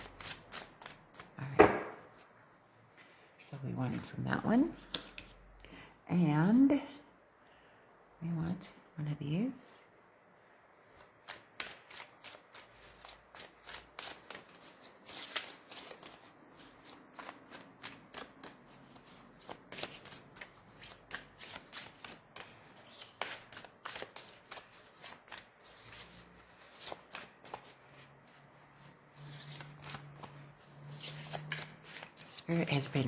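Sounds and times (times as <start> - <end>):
cards being shuffled: 10.9 - 33.0.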